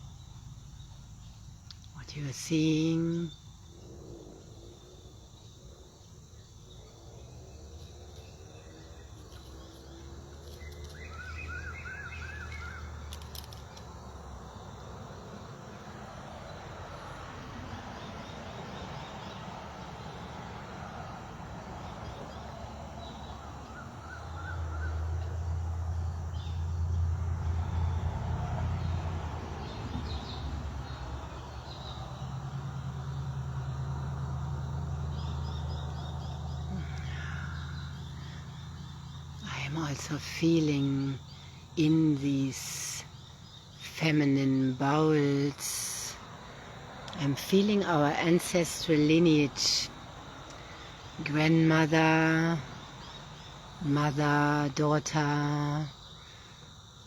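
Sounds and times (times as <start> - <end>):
small bird chirping trills: 4.5 - 14.9.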